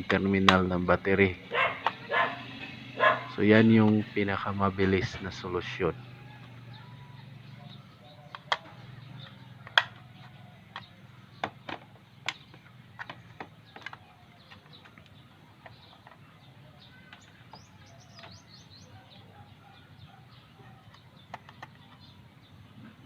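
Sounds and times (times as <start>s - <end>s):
bird chirping: 0.0s - 23.0s
hard plastic case clicking: 8.3s - 16.2s, 20.9s - 22.1s.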